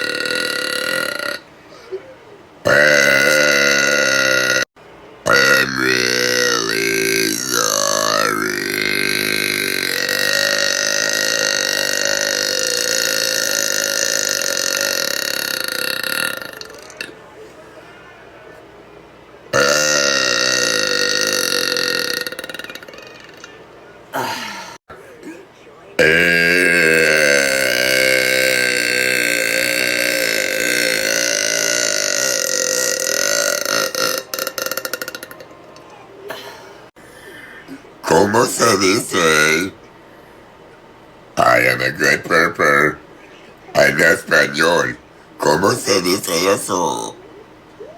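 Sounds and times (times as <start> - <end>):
woman belching: 0.0 - 1.4, 2.7 - 4.7, 5.3 - 17.1, 19.6 - 23.5, 26.0 - 35.5.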